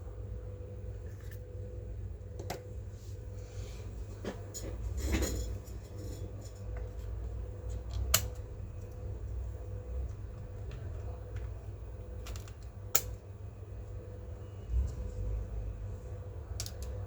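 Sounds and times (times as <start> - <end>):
low steady hum: 0.0 - 17.0
clicks and taps of handling parts: 2.4 - 2.7, 16.6 - 17.0.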